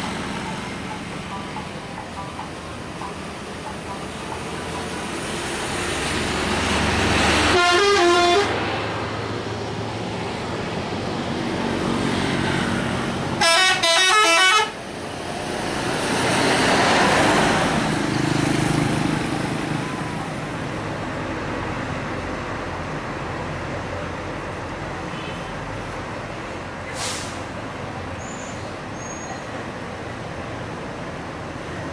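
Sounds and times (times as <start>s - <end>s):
buses passing: 0.0s - 31.9s
multi-note bus horn: 7.3s - 8.6s, 13.4s - 14.8s.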